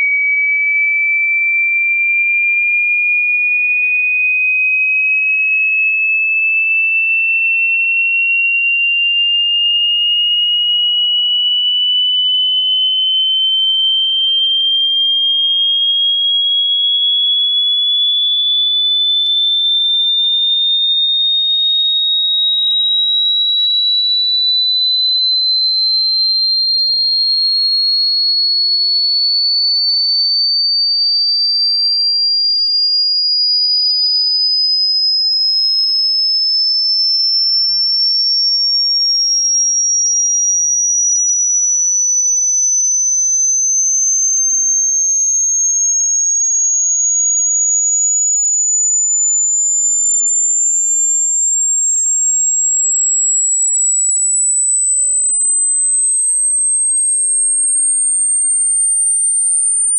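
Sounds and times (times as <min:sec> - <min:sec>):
high-pitched sine tone gliding upward: 0:11.2 - 0:14.0, 0:37.1 - 0:59.9.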